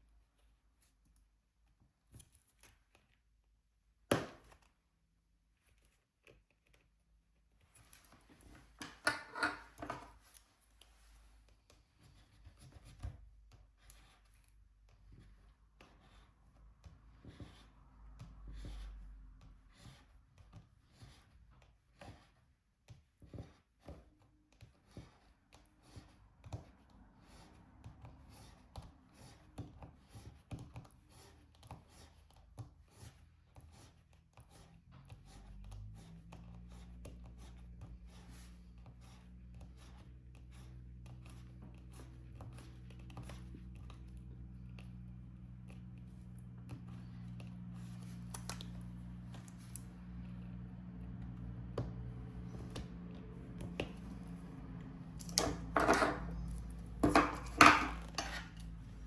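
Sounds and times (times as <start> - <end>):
pen clicking and tapping: 16.8 - 17.6, 18.2 - 18.8.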